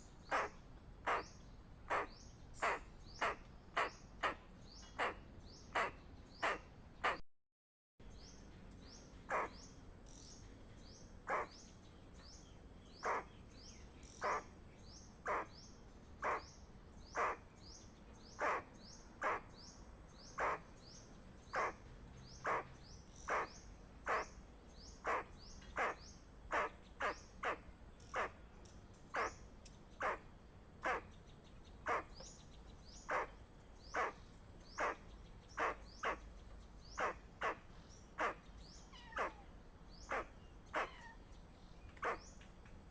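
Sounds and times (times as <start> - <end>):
squirrel alarm chirps: 29.2 - 29.4, 33.9 - 35.0, 35.6 - 36.2, 36.9 - 37.6, 38.2 - 39.4, 40.0 - 41.2.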